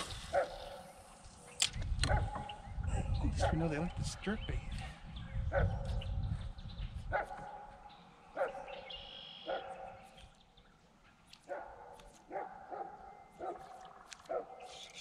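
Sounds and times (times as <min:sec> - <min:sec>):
dog barking: 0:00.3 - 0:00.9, 0:02.1 - 0:02.5, 0:03.4 - 0:03.7, 0:05.5 - 0:06.1, 0:07.1 - 0:10.1, 0:11.4 - 0:14.7.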